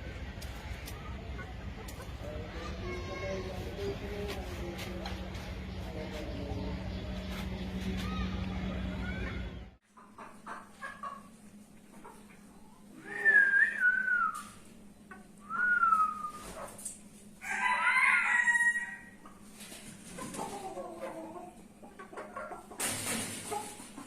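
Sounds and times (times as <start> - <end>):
roosters crowing: 17.4 - 19.2.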